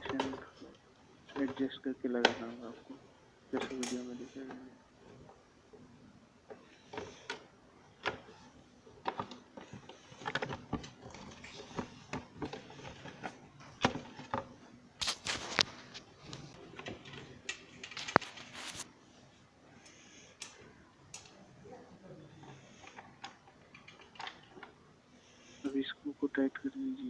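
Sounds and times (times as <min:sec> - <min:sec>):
plastic parts clicking and knocking: 0:00.0 - 0:02.6, 0:06.5 - 0:08.3, 0:09.0 - 0:15.2, 0:16.6 - 0:18.8, 0:22.4 - 0:24.8.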